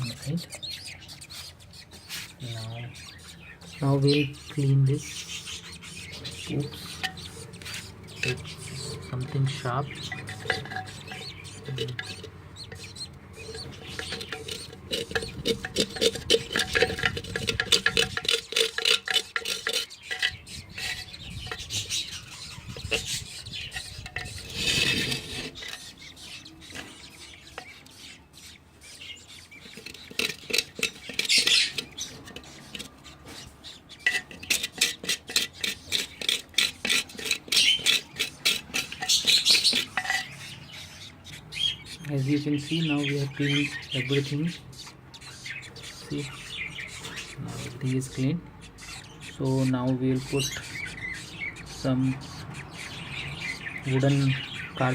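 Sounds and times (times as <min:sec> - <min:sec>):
scraping inside a pot: 0:04.4 - 0:41.6.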